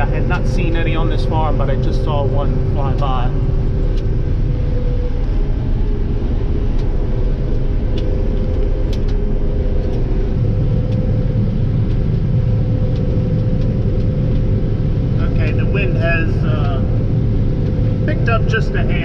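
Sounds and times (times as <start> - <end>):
combine harvester droning: 0.0 - 19.0
held whine: 0.0 - 19.0
light ticks: 7.5 - 9.2.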